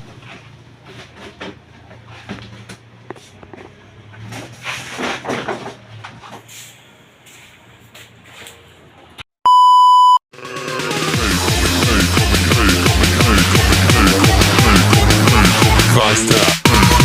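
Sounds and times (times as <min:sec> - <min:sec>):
electronic beep tone: 0:09.5 - 0:10.2
music with heavy beat: 0:10.4 - 0:17.0.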